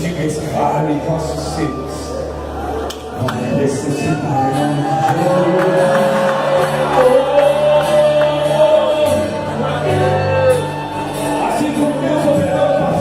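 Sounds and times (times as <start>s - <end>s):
gospel band playing: 1.9s - 13.0s
people singing: 4.4s - 10.3s.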